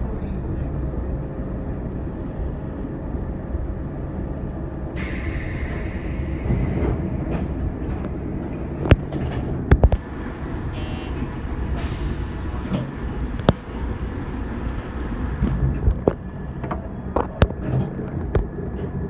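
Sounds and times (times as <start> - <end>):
electric train rumble: 0.0 - 19.0
hiss: 5.0 - 7.2.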